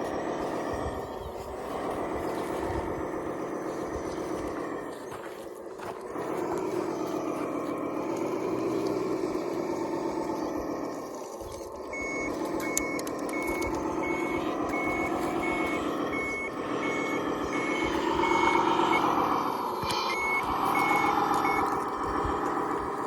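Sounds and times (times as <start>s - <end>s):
machine drone: 0.0s - 23.0s
reversing alarm beeping: 11.8s - 22.8s.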